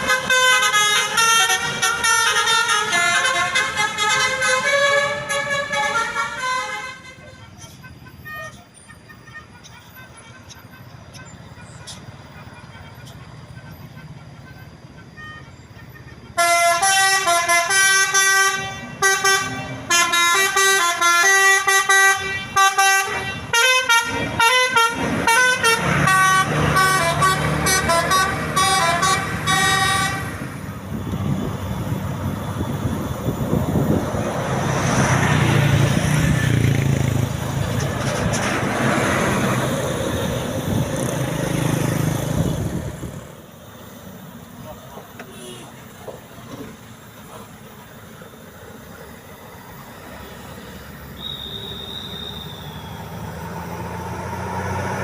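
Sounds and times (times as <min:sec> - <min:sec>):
bus horn playing melody: 0:00.0 - 0:30.7, 0:51.2 - 0:52.8
bus driving past: 0:00.0 - 0:55.0.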